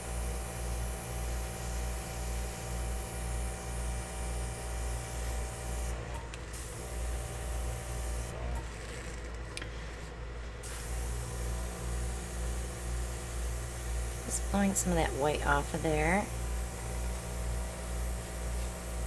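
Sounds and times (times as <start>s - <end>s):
compressor humming: 10.6s - 19.0s.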